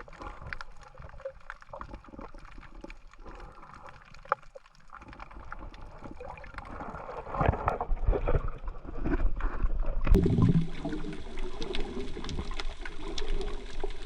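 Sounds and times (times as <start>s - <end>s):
water sloshing and gurgling: 0.0s - 14.0s.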